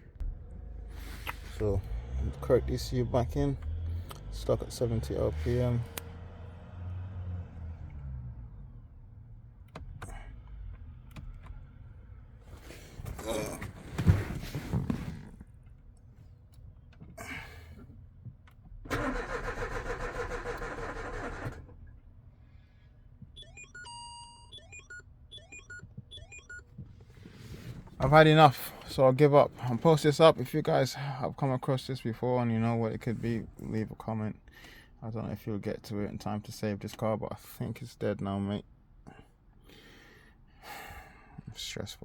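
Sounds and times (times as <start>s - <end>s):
starter motor cranking engine: 18.9s - 21.7s
short electronic beeps: 23.4s - 26.6s.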